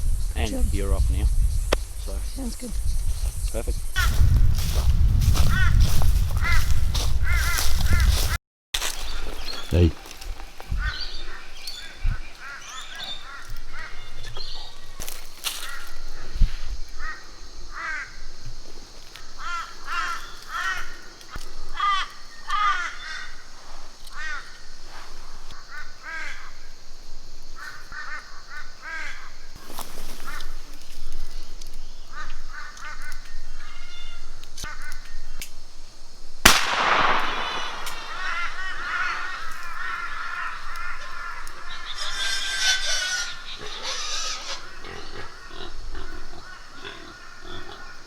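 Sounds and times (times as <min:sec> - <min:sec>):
birds calling: 0:00.0 - 0:26.8, 0:27.5 - 0:35.4, 0:36.4 - 0:48.0
shotgun shot ringing: 0:36.4 - 0:39.4.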